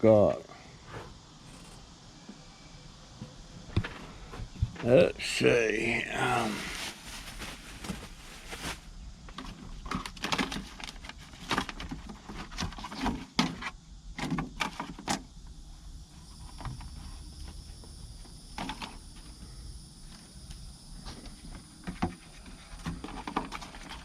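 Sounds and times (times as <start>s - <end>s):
faint high-pitched tone: 1.5s - 3.1s
objects being rummaged through: 5.8s - 13.2s.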